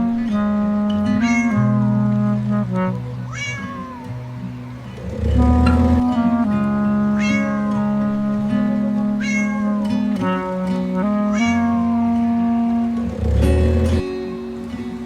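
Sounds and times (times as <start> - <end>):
background music with held chords: 0.0 - 15.0
cat meowing: 1.2 - 1.7, 3.2 - 4.2, 7.2 - 7.7, 9.2 - 9.8, 11.3 - 11.7.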